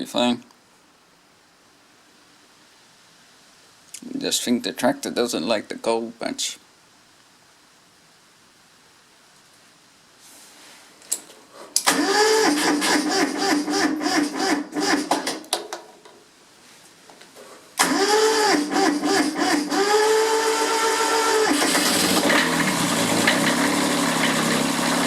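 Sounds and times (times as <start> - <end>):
electric starter cranking engine: 11.8 - 15.4, 17.8 - 25.0
diesel engine running: 17.8 - 25.0.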